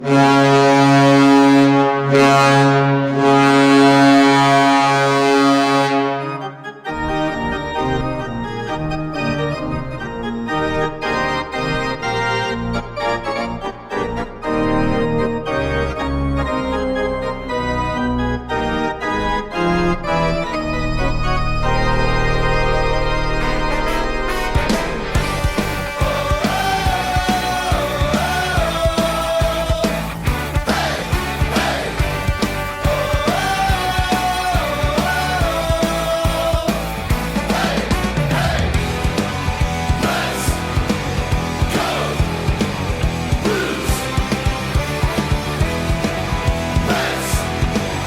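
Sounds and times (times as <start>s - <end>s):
hockey goal horn blast: 0.0s - 6.7s, 23.6s - 27.0s
fast organ-like music: 3.5s - 48.0s.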